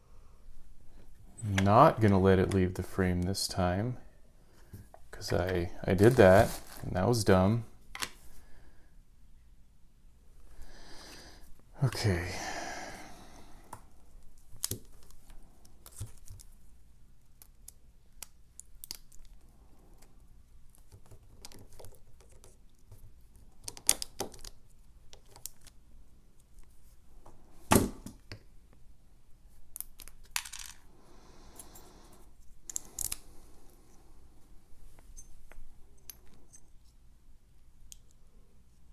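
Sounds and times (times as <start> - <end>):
light metallic clicks and clinks: 35.0 - 36.8.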